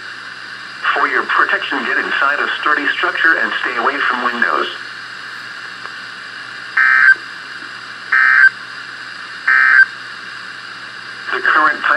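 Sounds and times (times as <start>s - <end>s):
faint radio hiss: 0.8s - 6.0s, 11.2s - 11.9s
buzzy digital tone bursts: 6.8s - 7.2s, 8.2s - 8.5s.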